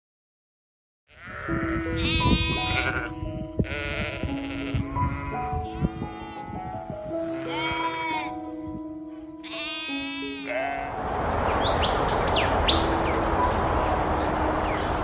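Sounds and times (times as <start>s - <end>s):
animal high wavering cry: 1.1s - 3.1s, 3.7s - 6.6s, 7.2s - 8.4s, 9.4s - 10.9s
background music sustained notes: 1.2s - 15.0s.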